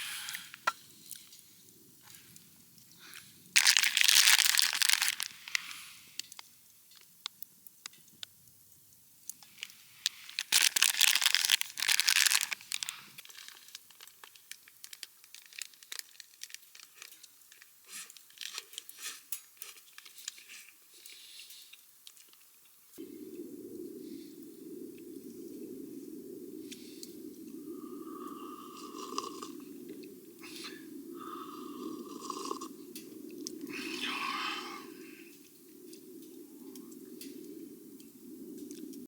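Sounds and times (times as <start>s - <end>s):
wrapping crinkling: 3.6s - 5.7s, 9.4s - 20.8s
small clicks and taps: 6.2s - 8.4s.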